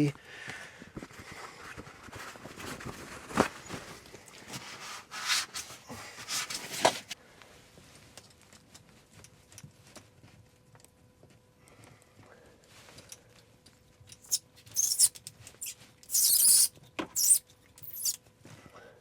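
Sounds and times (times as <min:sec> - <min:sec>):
scraping rubs: 0:03.4 - 0:07.2, 0:14.2 - 0:18.2.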